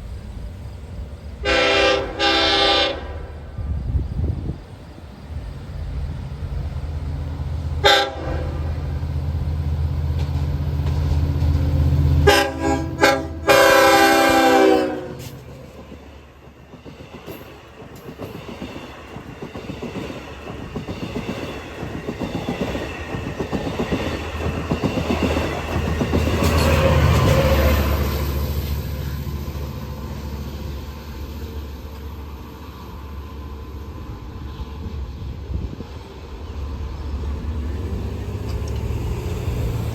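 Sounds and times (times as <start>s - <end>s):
locomotive engine drone: 0.0s - 16.4s, 24.2s - 39.9s
train horn blasts: 1.4s - 3.3s, 7.8s - 8.9s, 12.2s - 15.4s
train wheels clattering over rail joints: 9.6s - 12.5s, 15.2s - 28.8s, 37.4s - 39.9s.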